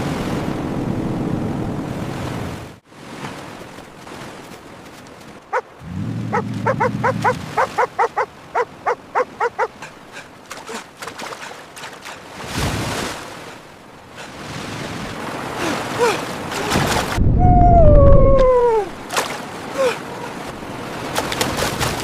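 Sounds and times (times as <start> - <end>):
dog yelping: 6.3 - 10.3.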